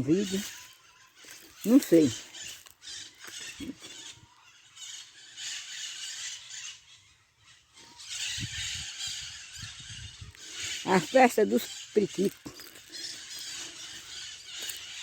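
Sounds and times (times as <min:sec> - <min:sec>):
parakeets screeching: 0:00.0 - 0:15.0.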